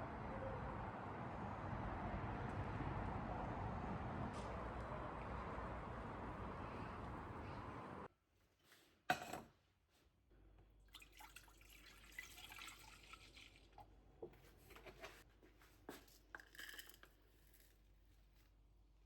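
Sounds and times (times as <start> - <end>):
faint liquid pouring: 10.9 - 13.9.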